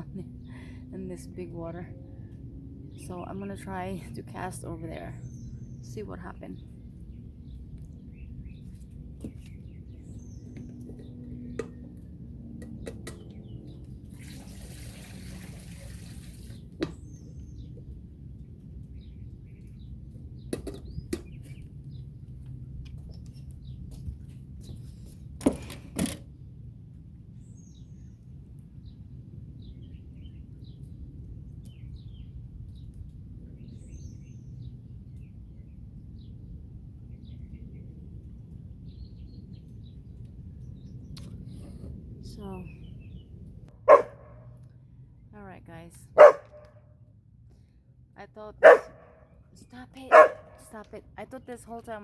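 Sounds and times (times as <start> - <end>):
small birds chirping: 0.0 - 14.3, 16.3 - 25.4, 27.3 - 46.8, 47.5 - 52.0
low outdoor rumble: 0.0 - 52.0.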